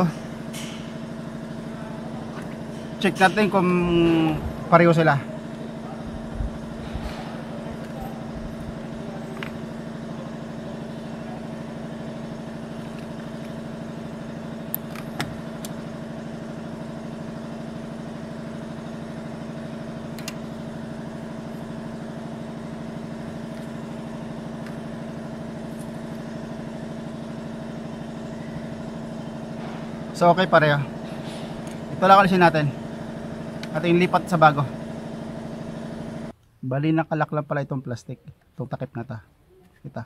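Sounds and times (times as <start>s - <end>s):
engine-like hum: 0.0s - 40.0s
sharp clicks: 20.2s - 20.4s.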